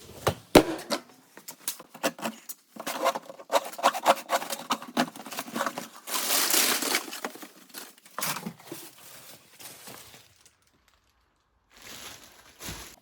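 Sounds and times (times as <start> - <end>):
sheet material crinkling: 4.3 - 10.8
small rustles: 5.0 - 13.0.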